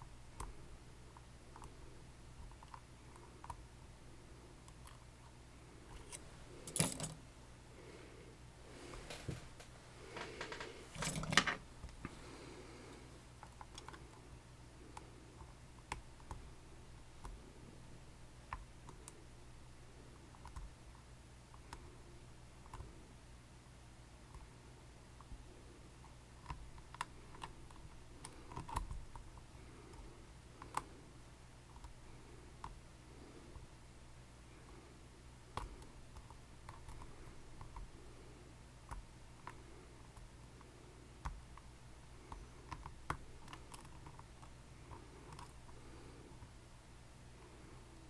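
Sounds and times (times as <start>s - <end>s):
lock-picking tools clicking: 6.0s - 7.2s.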